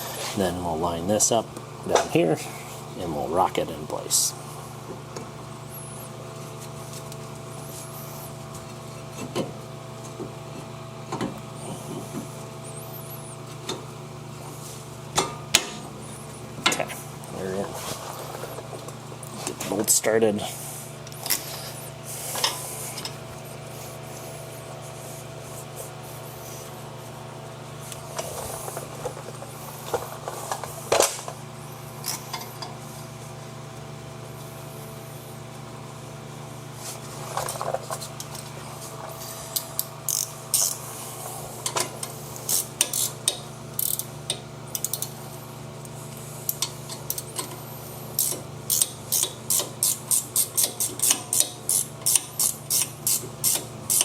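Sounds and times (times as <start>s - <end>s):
steady low hum: 0.0s - 54.0s
hand ratchet clicking: 39.6s - 40.8s, 42.4s - 45.2s, 48.2s - 54.0s.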